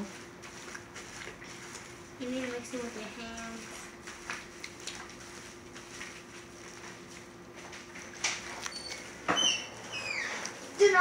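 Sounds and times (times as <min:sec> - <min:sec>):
slime squelching: 0:00.0 - 0:07.4.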